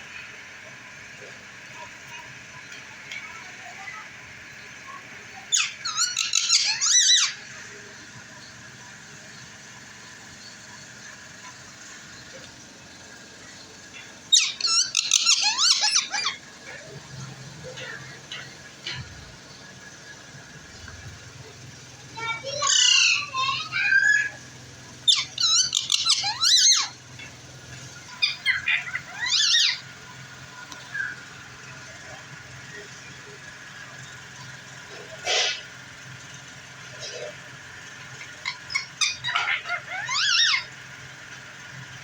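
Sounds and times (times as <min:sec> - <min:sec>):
parakeet screeching: 0:05.5 - 0:07.6, 0:14.0 - 0:17.0, 0:22.2 - 0:27.3, 0:28.0 - 0:29.9, 0:35.0 - 0:35.7, 0:38.3 - 0:40.8.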